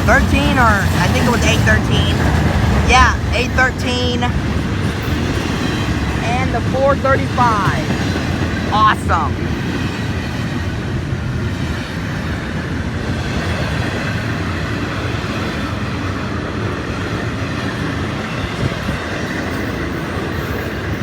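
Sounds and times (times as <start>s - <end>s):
steel train wheels on rails: 0.0s - 21.0s.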